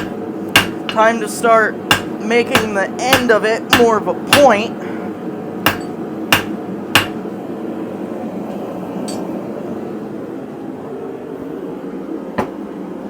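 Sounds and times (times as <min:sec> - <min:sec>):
hammer striking steel on anvil: 0:00.0 - 0:01.1, 0:01.9 - 0:04.6, 0:05.7 - 0:07.2
steady hum: 0:00.0 - 0:13.0.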